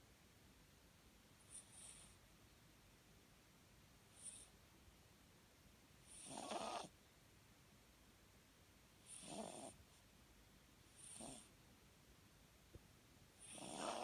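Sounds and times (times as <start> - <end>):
dog snoring: 1.5 - 2.2, 4.1 - 4.5, 6.0 - 6.9, 9.0 - 9.8, 10.9 - 11.5, 13.4 - 14.0.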